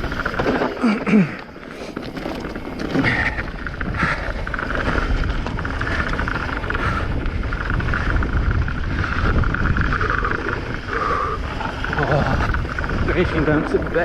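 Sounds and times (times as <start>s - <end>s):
bike rattling: 0.0s - 14.0s
low rumble of bike tyres: 0.0s - 14.0s
wind rushing on microphone: 1.9s - 14.0s.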